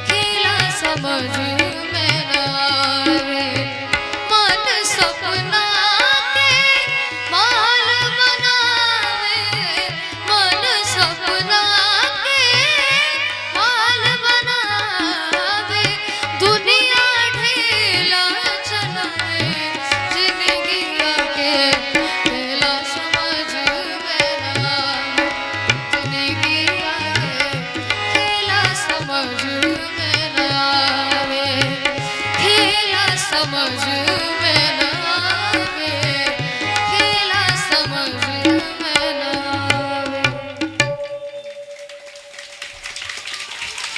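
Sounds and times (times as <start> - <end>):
wavering melodic lead: 39.7 - 43.8.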